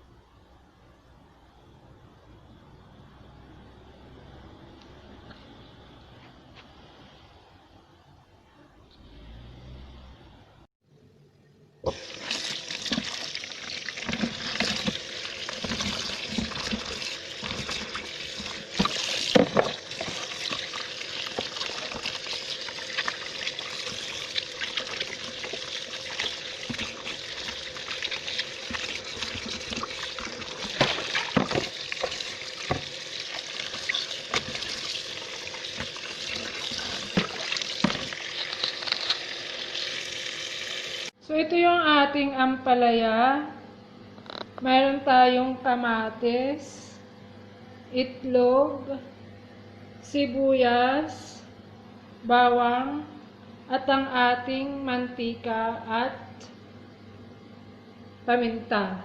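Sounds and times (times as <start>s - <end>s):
food sizzling in oil: 11.9s - 41.1s.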